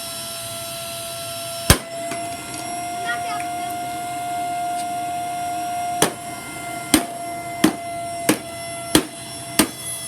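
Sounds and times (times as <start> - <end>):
vacuum cleaner high whine: 0.0 - 10.0
vacuum cleaner being struck: 6.0 - 6.3, 6.9 - 9.9.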